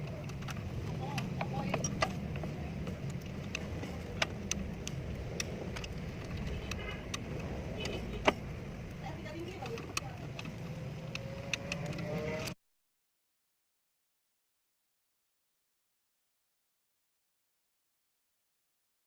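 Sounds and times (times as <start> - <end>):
metallic tool clicks: 0.0 - 9.0, 9.6 - 12.5.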